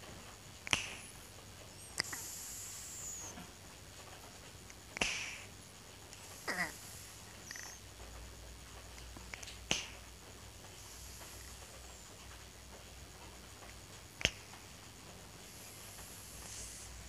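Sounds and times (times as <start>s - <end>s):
cat snoring: 1.8s - 3.3s, 6.3s - 7.8s
hissing breath: 1.8s - 3.4s, 5.0s - 5.5s, 6.2s - 7.8s, 10.7s - 12.0s, 15.4s - 17.0s.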